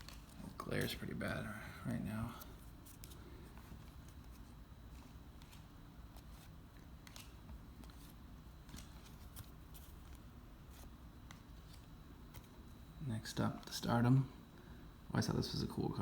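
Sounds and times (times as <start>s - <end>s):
cards being flipped through: 0.0s - 1.1s, 2.3s - 12.6s.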